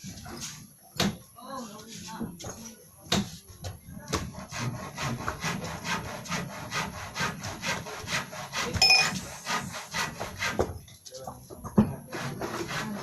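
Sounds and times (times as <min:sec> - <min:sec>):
hand saw cutting wood: 0:04.0 - 0:10.8, 0:12.0 - 0:13.0
short metallic ring: 0:08.8 - 0:09.2.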